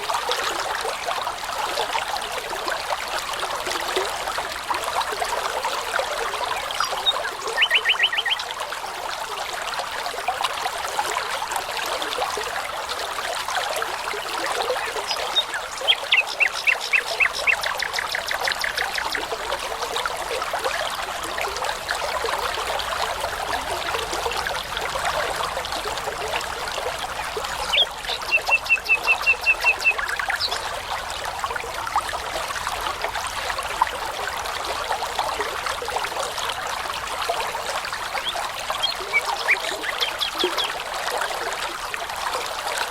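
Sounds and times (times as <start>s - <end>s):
brook babbling: 0.0s - 42.9s
nightingale singing: 6.8s - 8.4s.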